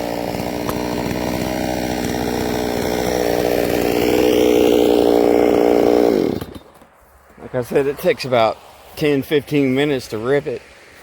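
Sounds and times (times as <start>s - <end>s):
chainsaw ripping a log: 0.0s - 7.0s.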